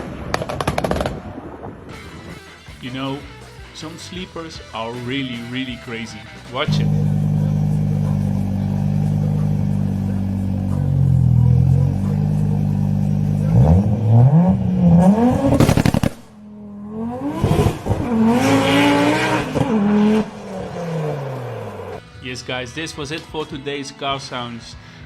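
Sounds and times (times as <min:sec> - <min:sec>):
car engine revving: 0:06.7 - 0:22.0.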